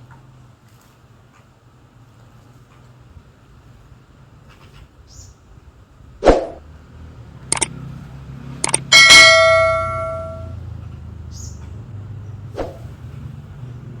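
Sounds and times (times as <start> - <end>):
sharp clicks: 7.5 - 7.7, 8.6 - 9.2
bell ringing: 8.6 - 10.6.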